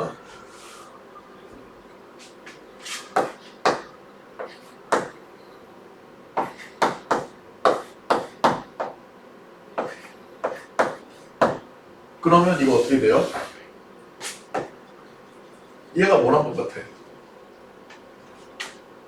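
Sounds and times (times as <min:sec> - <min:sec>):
chalk tapping on a blackboard: 0:02.2 - 0:05.2, 0:06.4 - 0:09.0, 0:09.8 - 0:11.6.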